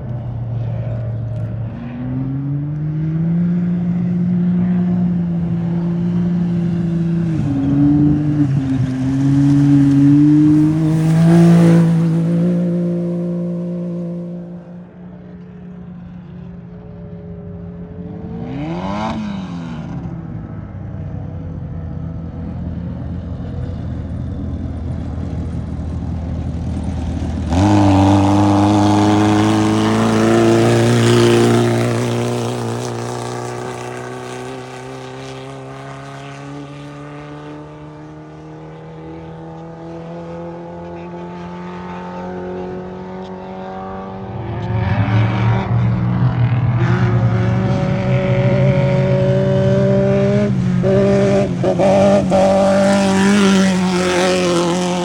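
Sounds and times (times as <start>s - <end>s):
loud engine: 0.0s - 55.0s
race vehicle engines revving: 0.0s - 55.0s
vehicle passing at speed: 0.0s - 55.0s.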